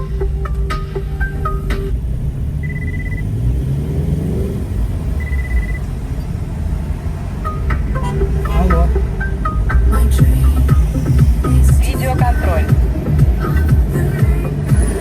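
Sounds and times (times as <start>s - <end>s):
car cabin engine rumble: 0.0s - 15.0s
short high beeps: 2.6s - 3.3s, 5.2s - 5.9s, 7.4s - 11.2s.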